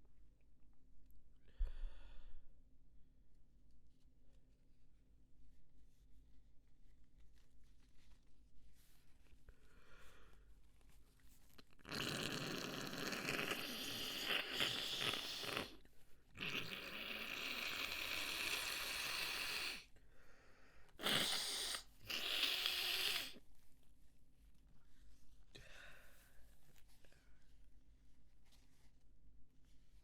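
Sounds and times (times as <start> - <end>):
person blowing nose: 11.9 - 15.8, 16.4 - 19.9, 21.0 - 23.4.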